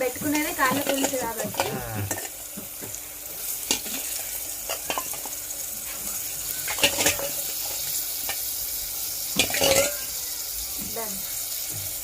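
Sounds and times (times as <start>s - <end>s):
meat sizzling in a pot: 0.0s - 12.0s.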